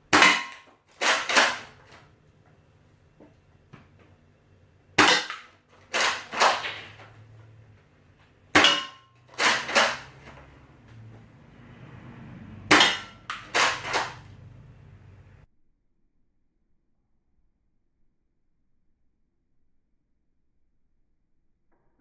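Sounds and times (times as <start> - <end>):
toy blaster snapping clacks: 0.9 - 2.0, 5.0 - 7.0, 9.3 - 10.3, 12.7 - 14.3.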